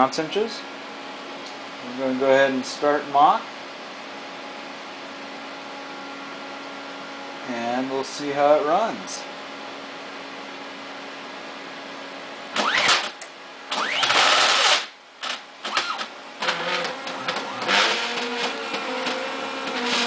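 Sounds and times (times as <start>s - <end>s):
stepper motors whining: 12.6s - 20.0s.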